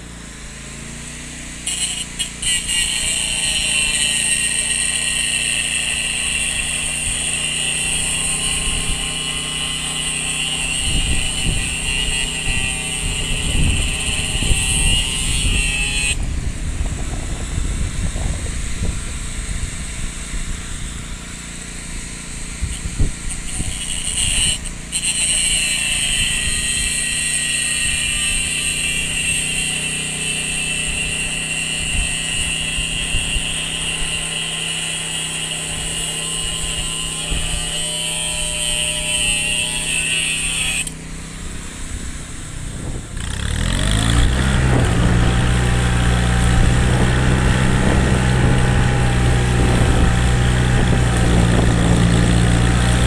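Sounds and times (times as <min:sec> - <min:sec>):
high-pitched machine whine: 0:00.0 - 0:53.0
engine speeding up: 0:43.2 - 0:53.0.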